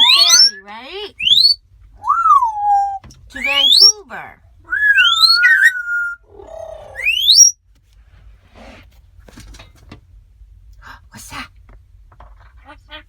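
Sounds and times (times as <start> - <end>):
parrot squawk: 0.0 - 4.0, 4.7 - 7.5
parrots whistling: 0.0 - 4.0, 4.7 - 7.6.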